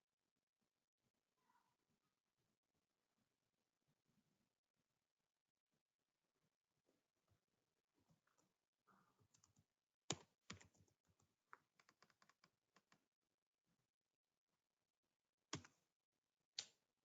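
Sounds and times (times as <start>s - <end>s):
faint keyboard typing: 9.2s - 13.0s.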